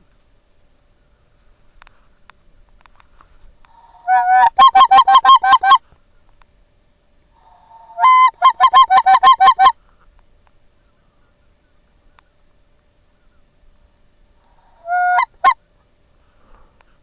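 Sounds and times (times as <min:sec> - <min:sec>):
goose honking: 0:03.8 - 0:05.8, 0:07.5 - 0:09.8, 0:14.6 - 0:15.6.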